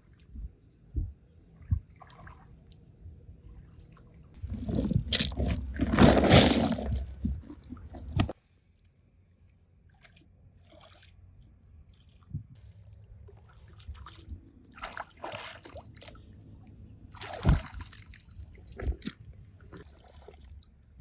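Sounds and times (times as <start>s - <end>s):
water sloshing and splashing: 4.4s - 8.4s, 10.0s - 11.2s, 13.3s - 16.4s, 17.1s - 20.6s.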